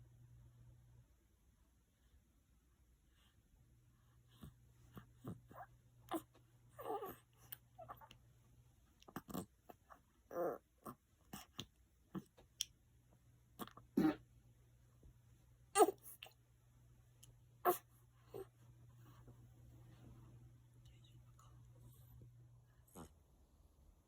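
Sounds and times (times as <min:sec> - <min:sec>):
baby snoring and snorting: 0:05.2 - 0:08.0, 0:09.1 - 0:12.3.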